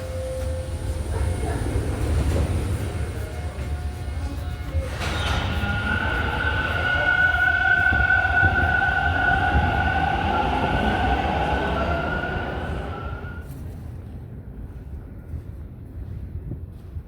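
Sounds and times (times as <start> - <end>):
high squealing whine: 0.0 - 13.4
subway train rumble: 0.0 - 17.0.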